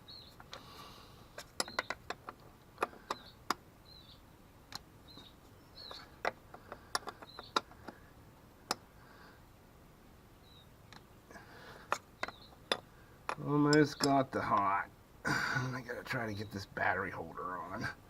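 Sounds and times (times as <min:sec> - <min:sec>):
small bird chirping: 0:00.0 - 0:00.9, 0:01.5 - 0:02.1, 0:03.0 - 0:06.3, 0:06.9 - 0:07.9, 0:10.4 - 0:11.2, 0:12.0 - 0:12.8.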